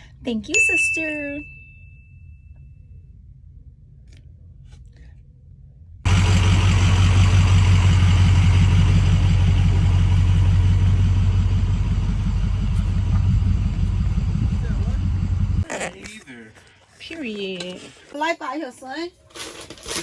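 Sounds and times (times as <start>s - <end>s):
motorboat engine running: 6.1s - 15.6s.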